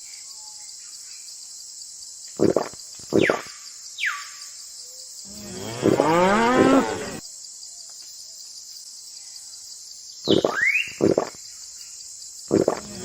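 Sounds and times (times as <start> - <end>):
cow mooing: 5.3 - 7.2.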